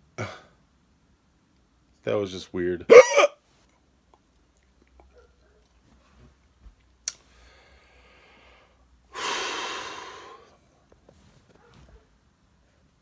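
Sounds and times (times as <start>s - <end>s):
hiccup click: 2.9s - 3.4s
man breathing: 7.2s - 10.6s.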